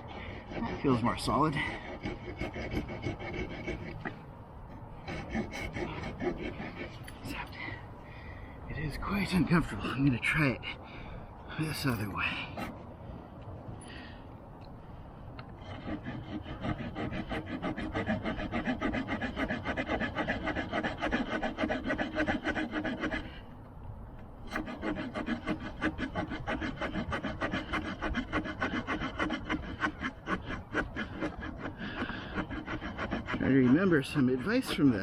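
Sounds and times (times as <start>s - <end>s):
small saw cutting wood: 0.0s - 7.5s, 15.4s - 23.5s, 24.4s - 35.0s.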